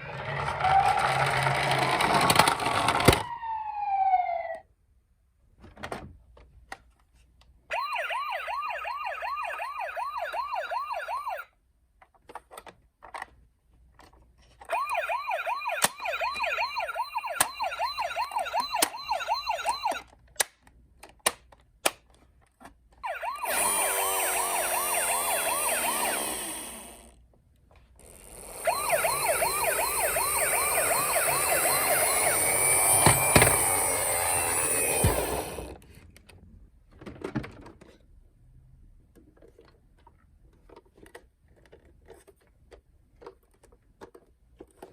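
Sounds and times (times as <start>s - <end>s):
toy electronic siren wailing: 3.2s - 4.6s, 7.7s - 11.5s, 14.7s - 20.1s, 23.0s - 27.1s, 28.2s - 35.7s.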